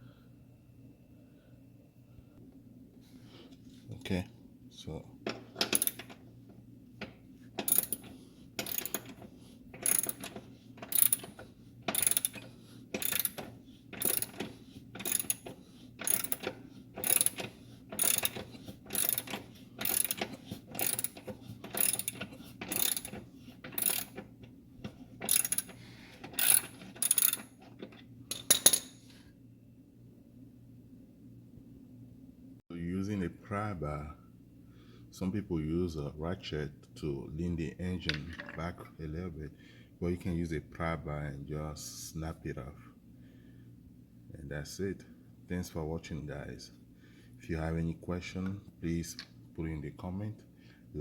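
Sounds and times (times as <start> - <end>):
hand ratchet clicking: 5.6 - 6.2, 7.6 - 9.2, 9.8 - 24.3, 25.2 - 27.5.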